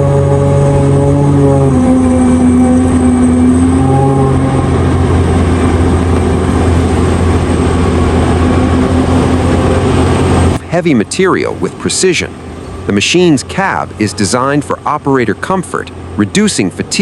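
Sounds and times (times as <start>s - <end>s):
heavy diesel machinery droning: 0.0s - 17.0s.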